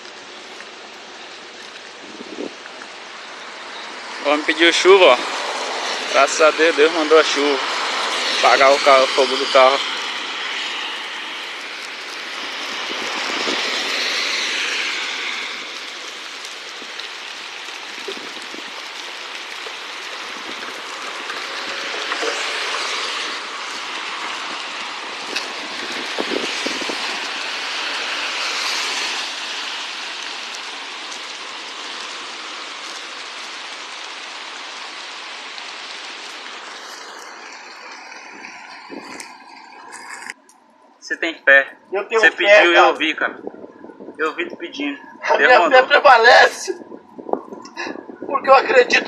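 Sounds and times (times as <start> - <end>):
rain hissing: 0.0 - 49.0
wet road noise: 0.0 - 49.0
heavy vehicles passing: 2.9 - 17.7, 19.9 - 33.2.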